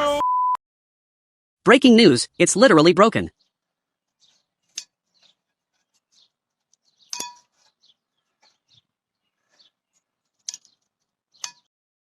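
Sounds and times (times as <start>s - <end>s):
rustling: 3.4s - 11.4s.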